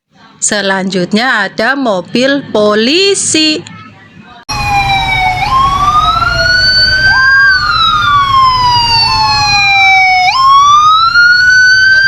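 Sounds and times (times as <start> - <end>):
police siren wailing: 4.5 - 12.0.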